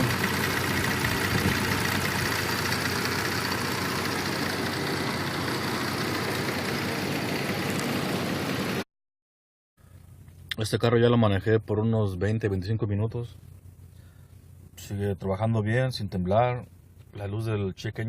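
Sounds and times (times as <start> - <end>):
car engine idling: 0.0 - 8.8.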